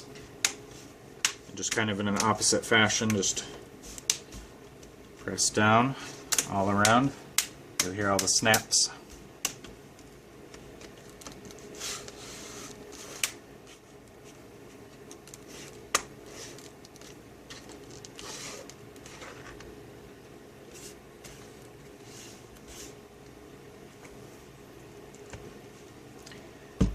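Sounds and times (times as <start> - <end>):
rubbing and handling of plastic: 10.4 - 19.8, 20.6 - 23.2.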